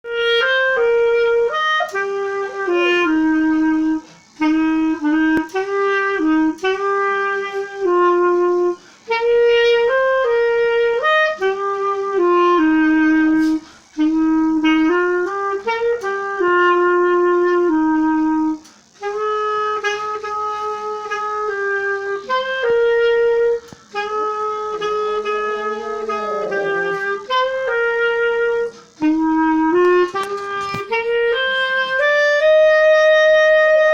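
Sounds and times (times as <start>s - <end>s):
clarinet playing hymn melody: 0.0s - 33.9s
dog howling: 25.2s - 27.4s.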